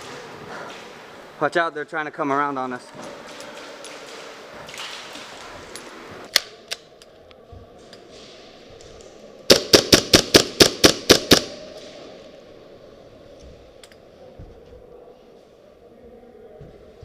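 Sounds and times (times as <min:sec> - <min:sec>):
airsoft guns firing: 0:09.5 - 0:11.7.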